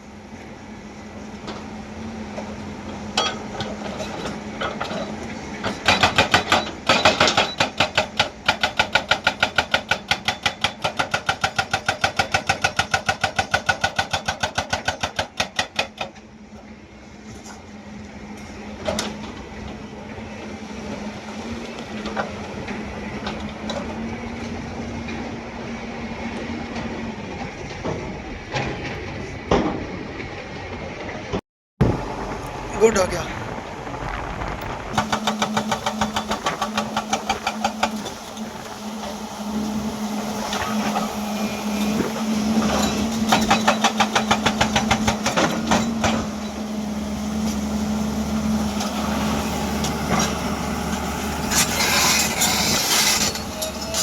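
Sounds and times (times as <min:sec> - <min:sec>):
hydraulic breaker pounding rock: 0:03.1 - 0:16.2, 0:35.0 - 0:54.0
diesel engine running: 0:31.8 - 0:54.0.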